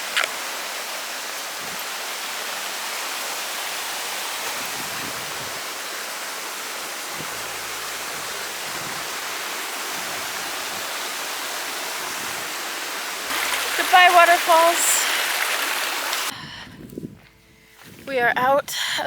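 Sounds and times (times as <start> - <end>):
waterfall rushing: 0.0 - 16.4.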